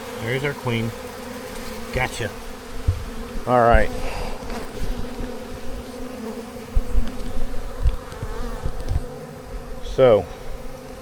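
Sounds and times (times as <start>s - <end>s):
bees buzzing: 0.0s - 11.0s
dull low thumps: 2.8s - 4.0s, 6.7s - 9.7s.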